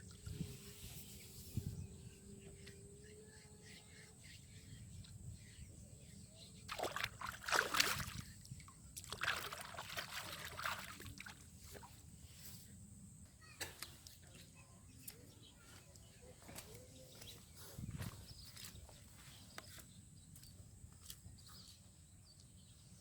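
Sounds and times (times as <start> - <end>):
water splashing and sloshing: 6.7 - 12.0.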